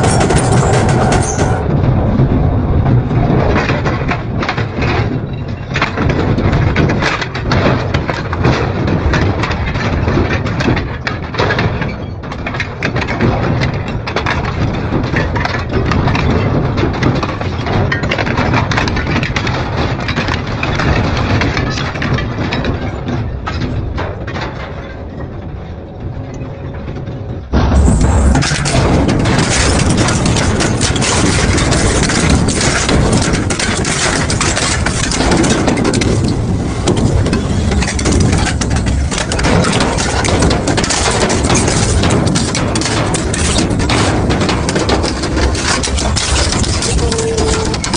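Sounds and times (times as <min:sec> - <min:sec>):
shredder cracks and snaps: 0:27.8 - 0:47.9.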